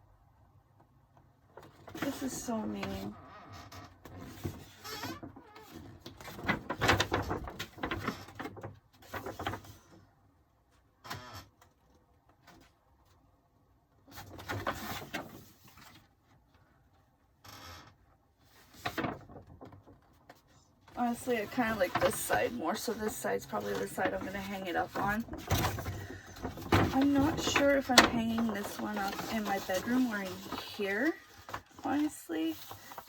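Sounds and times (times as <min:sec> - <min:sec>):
paper poster rustling: 0:18.4 - 0:33.0.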